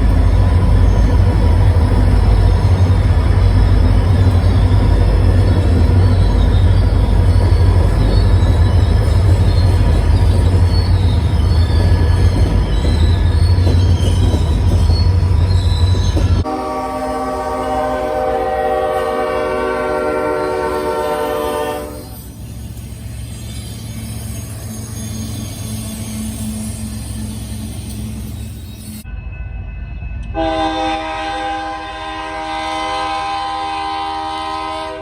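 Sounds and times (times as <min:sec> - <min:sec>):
train wheel squeal: 0:00.0 - 0:30.9
freight train rumbling past: 0:00.0 - 0:35.0
locomotive air horn chord: 0:16.4 - 0:22.2, 0:30.4 - 0:35.0.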